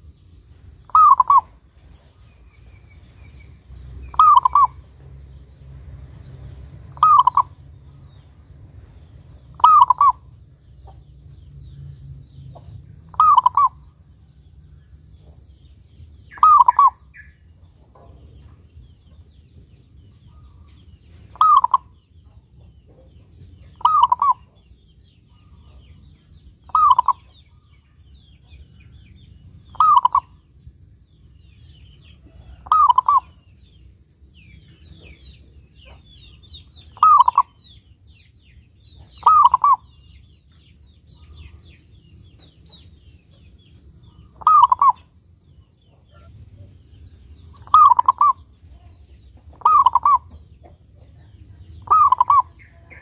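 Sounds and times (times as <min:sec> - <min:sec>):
small birds twittering: 0:00.0 - 0:53.0
dove cooing: 0:00.9 - 0:01.6, 0:04.0 - 0:04.8, 0:06.9 - 0:07.6, 0:09.5 - 0:10.3, 0:13.1 - 0:13.8, 0:16.3 - 0:17.1, 0:21.3 - 0:22.0, 0:23.8 - 0:24.6, 0:26.7 - 0:27.3, 0:29.7 - 0:30.4, 0:32.3 - 0:33.4, 0:36.9 - 0:37.6, 0:39.1 - 0:39.9, 0:44.3 - 0:45.2, 0:47.6 - 0:53.0.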